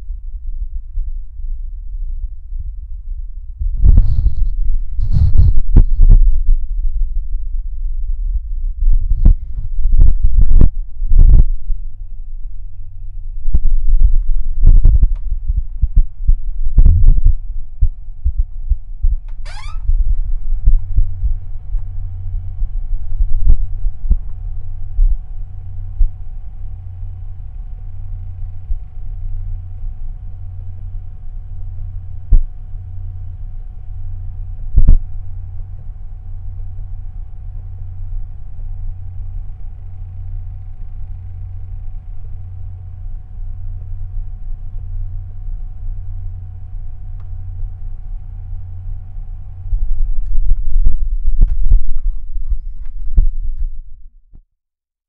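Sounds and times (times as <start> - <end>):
faint steady hum: 0.0 - 54.4
muffled heartbeat thumps: 2.6 - 30.6, 32.2 - 32.8, 34.5 - 35.8, 46.7 - 54.1.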